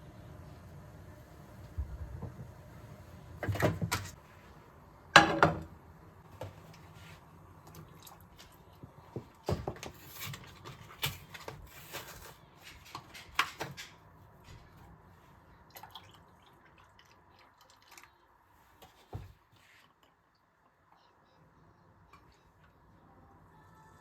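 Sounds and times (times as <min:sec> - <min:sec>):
faint low hum: 0:14.2 - 0:24.0.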